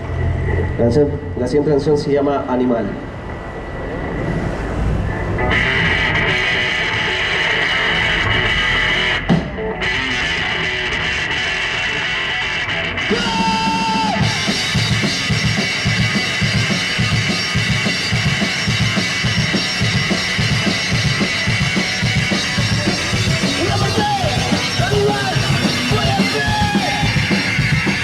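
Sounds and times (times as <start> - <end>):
live rock band playing: 5.2 - 28.0
drum kit: 5.5 - 28.0.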